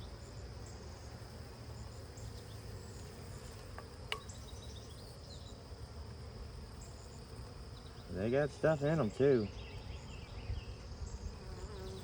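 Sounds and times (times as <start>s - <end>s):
honeybees buzzing: 0.0s - 12.0s.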